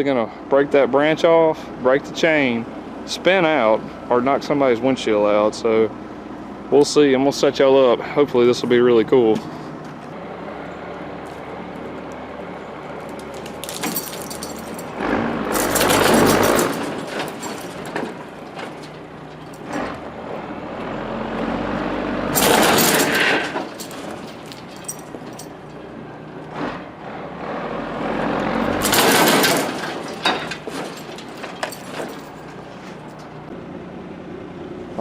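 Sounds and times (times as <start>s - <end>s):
truck straining noise: 9.4s - 33.6s
pickup truck engine revving: 13.6s - 18.2s.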